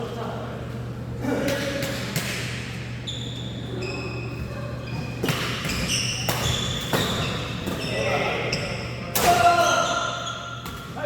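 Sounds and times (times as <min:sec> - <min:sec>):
shoes squeaking on floor: 0:03.0 - 0:08.9, 0:09.6 - 0:10.6.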